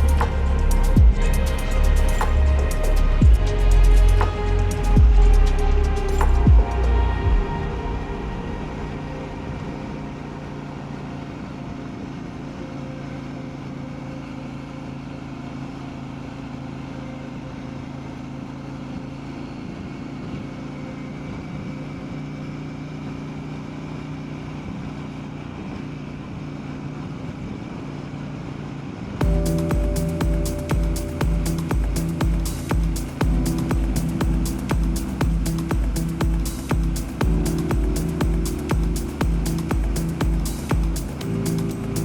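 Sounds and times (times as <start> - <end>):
motorcycle engine running: 0.0 - 7.4, 29.2 - 42.0.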